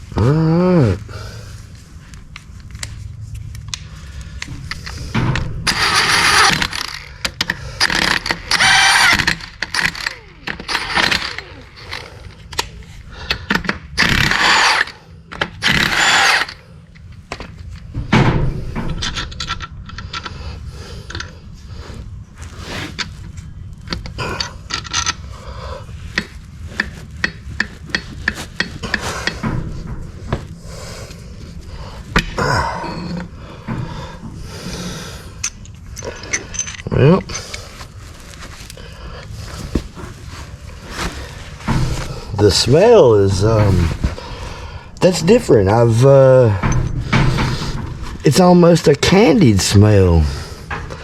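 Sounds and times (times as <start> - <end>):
metal tools clanking and scraping: 4.5 - 12.7, 13.3 - 20.4, 22.8 - 25.4, 26.1 - 30.6, 35.3 - 50.0.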